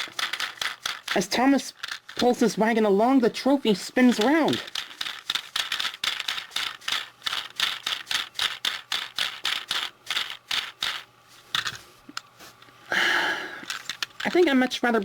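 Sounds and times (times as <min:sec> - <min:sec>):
plastic toy gears clicking: 0:00.0 - 0:02.4, 0:04.1 - 0:11.8, 0:13.6 - 0:14.7.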